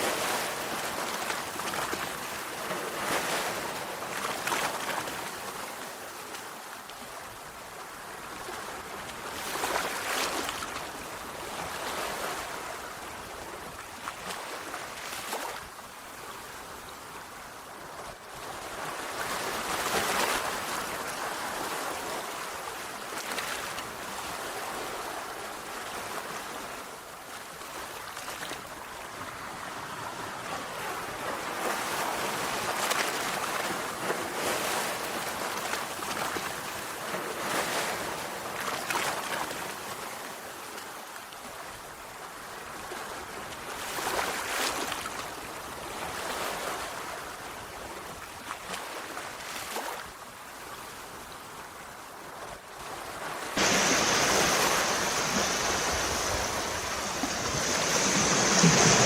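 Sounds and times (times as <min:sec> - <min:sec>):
sea waves washing onto shore: 0:53.2 - 0:59.0.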